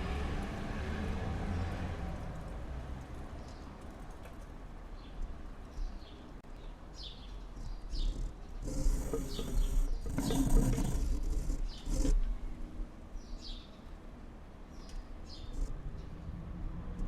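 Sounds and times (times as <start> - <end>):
small birds chirping: 2.4 - 12.4, 13.1 - 14.0, 14.6 - 16.3.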